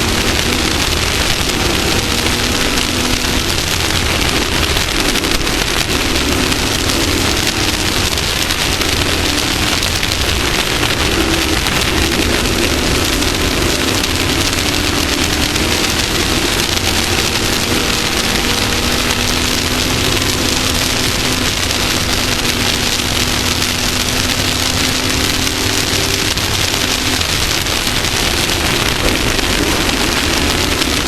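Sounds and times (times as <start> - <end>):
race vehicle engine running: 0.0 - 31.0
wind and dirt-road noise: 0.0 - 31.0.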